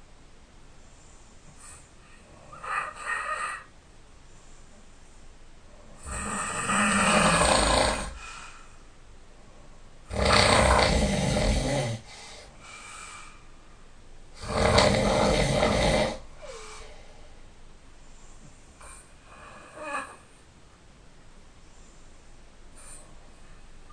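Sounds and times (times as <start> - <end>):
quiet breathing: 0.0 - 23.9
person snoring loudly: 6.0 - 8.3, 10.1 - 12.1, 14.4 - 16.7.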